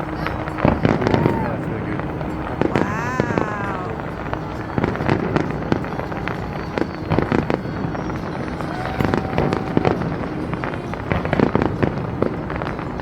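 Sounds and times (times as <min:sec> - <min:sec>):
continuous rumbling din: 0:00.0 - 0:13.0
fireworks bangs and crackles: 0:00.0 - 0:13.0.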